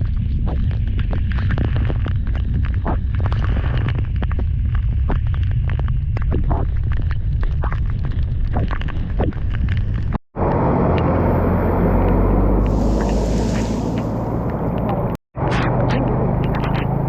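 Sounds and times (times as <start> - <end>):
low rumble: 0.0 - 17.0
heavy downpour rushing: 10.4 - 15.1.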